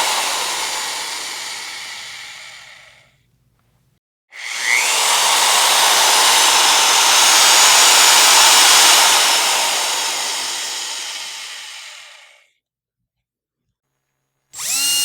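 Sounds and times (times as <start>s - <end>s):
power drill whirring: 0.0s - 2.9s, 4.4s - 12.3s, 14.5s - 15.0s.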